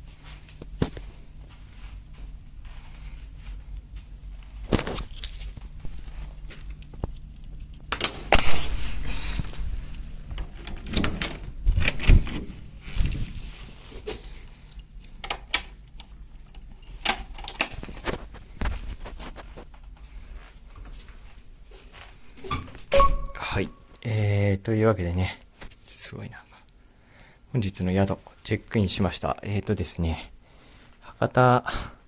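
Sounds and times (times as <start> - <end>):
metal keys jingling: 4.8 - 18.4.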